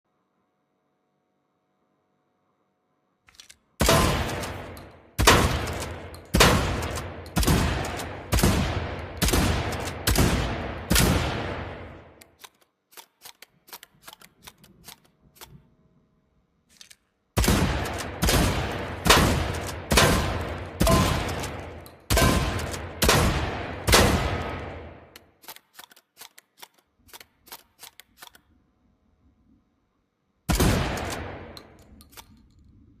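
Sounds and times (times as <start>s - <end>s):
shotgun firing: 3.8s - 12.2s, 17.4s - 25.1s, 30.5s - 31.8s
faint small clicks: 25.1s - 28.6s, 31.0s - 32.8s.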